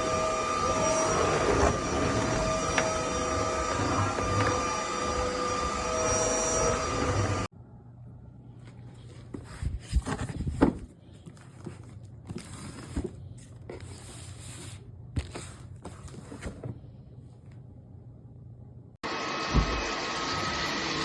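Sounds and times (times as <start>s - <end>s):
scraping and rubbing handling noise: 8.6s - 17.7s.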